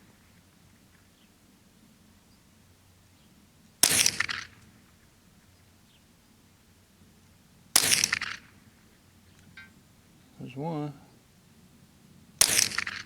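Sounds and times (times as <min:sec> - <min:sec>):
rifle shot crack: 0:03.8 - 0:04.8, 0:07.8 - 0:08.7, 0:12.4 - 0:13.0.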